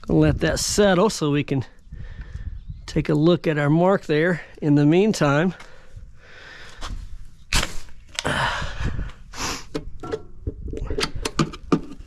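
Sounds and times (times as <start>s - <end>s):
handling knocks and clicks: 9.7s - 12.0s.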